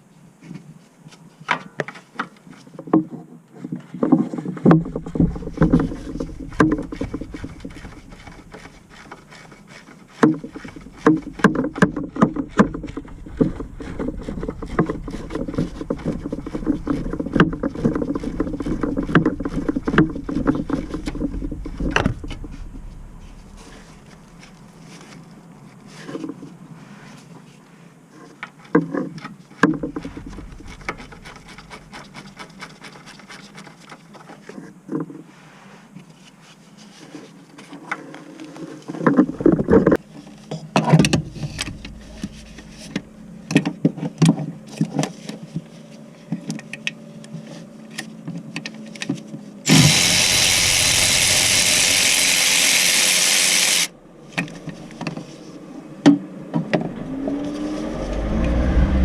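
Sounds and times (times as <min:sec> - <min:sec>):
loud steady hiss: 0:49.7 - 0:54.0.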